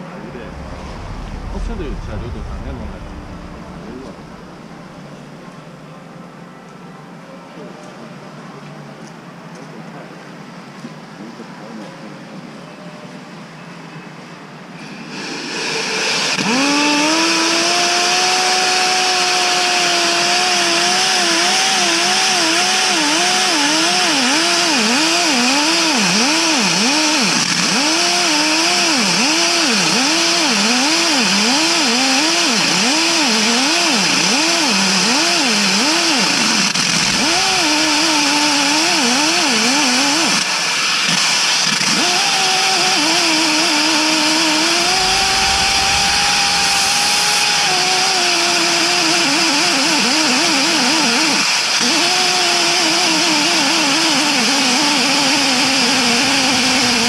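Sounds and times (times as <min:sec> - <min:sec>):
loud hissing: 0:00.0 - 0:05.4, 0:44.5 - 0:48.9
petrol power tool engine revving: 0:15.2 - 0:57.0.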